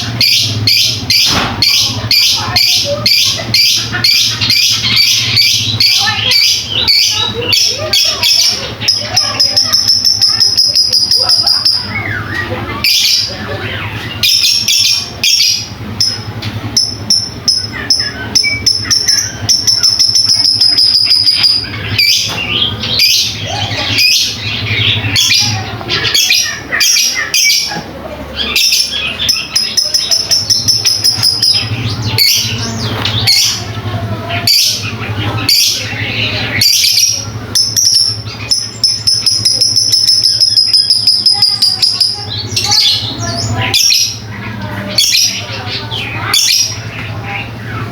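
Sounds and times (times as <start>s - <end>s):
lovebirds chattering and squawking: 0.0s - 47.9s.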